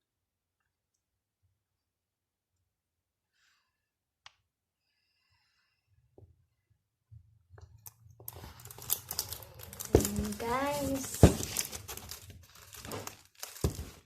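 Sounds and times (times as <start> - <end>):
packaging crackling and clicking: 7.8 - 14.0.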